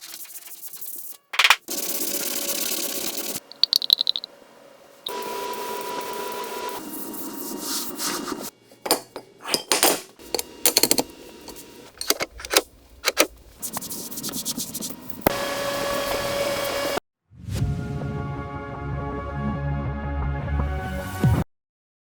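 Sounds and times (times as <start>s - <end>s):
hand tools tapping metal: 3.5s - 4.3s, 8.8s - 13.2s.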